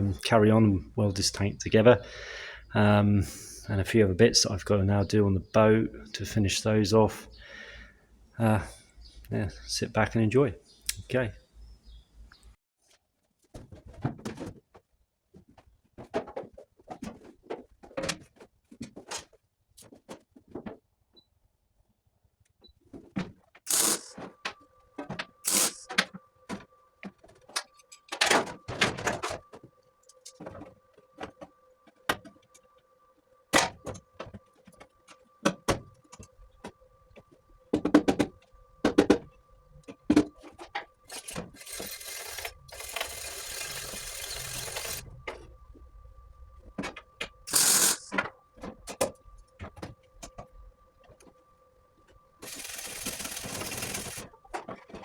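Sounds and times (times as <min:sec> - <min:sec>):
faint steady hum: 0:00.0 - 0:12.6, 0:23.7 - 0:55.0
welding crackling hiss: 0:23.7 - 0:24.2, 0:25.4 - 0:25.9, 0:47.5 - 0:48.1.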